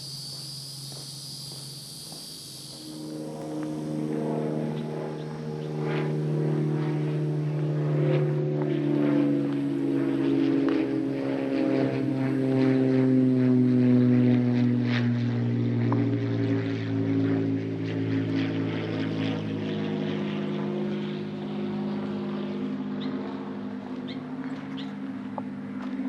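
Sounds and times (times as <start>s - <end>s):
propeller airplane engine drone: 0.0s - 26.0s.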